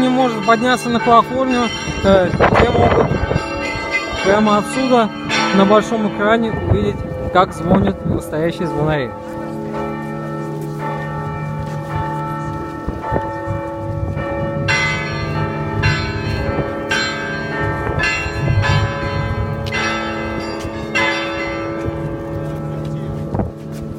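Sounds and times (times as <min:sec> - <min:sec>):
low church bells ringing: 0:00.0 - 0:23.9.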